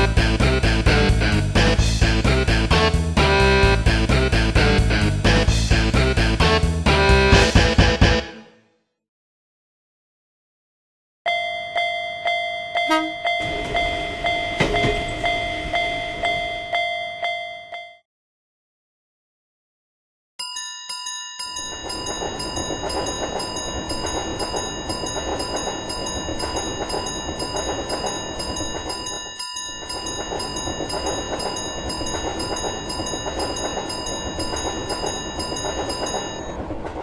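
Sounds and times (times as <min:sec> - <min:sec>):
freight train rumbling past: 0:00.0 - 0:08.2, 0:12.8 - 0:17.0, 0:21.5 - 0:37.0
railroad crossing bell dinging: 0:11.3 - 0:18.0, 0:20.4 - 0:37.0.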